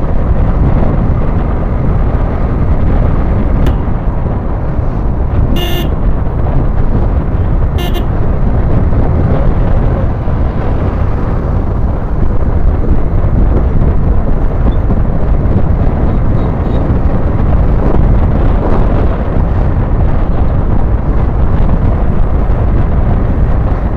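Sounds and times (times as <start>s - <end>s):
motorcycle engine running: 0.0s - 23.9s
wind rush on microphone: 0.0s - 23.9s
vehicle horn toots: 5.5s - 6.1s, 7.7s - 8.2s.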